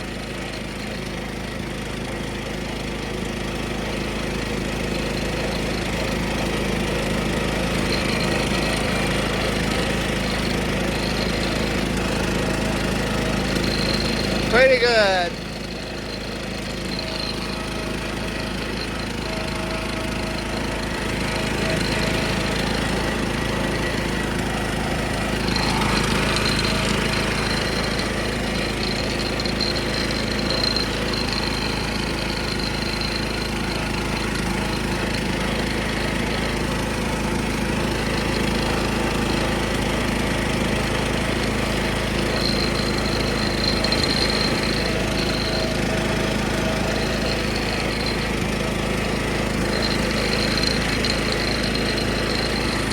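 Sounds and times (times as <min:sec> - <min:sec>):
riding lawnmower engine running: 0:00.0 - 0:52.9
thin high whine: 0:07.7 - 0:36.9, 0:41.8 - 0:52.9.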